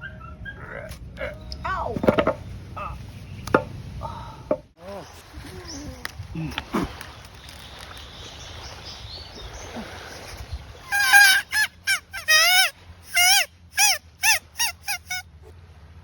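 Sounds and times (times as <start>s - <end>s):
goose-like honking calls: 10.9s - 15.2s.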